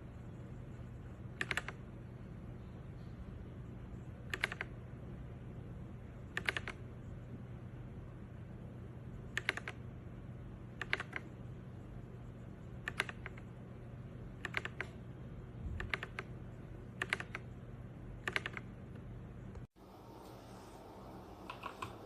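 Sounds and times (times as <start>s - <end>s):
faint low hum: 0.0s - 22.0s
mechanical keyboard typing: 1.4s - 1.8s, 4.2s - 4.7s, 6.3s - 6.8s, 9.3s - 9.8s, 10.8s - 11.4s, 12.8s - 13.5s, 14.4s - 15.0s, 15.8s - 16.3s, 16.9s - 17.5s, 18.2s - 18.7s.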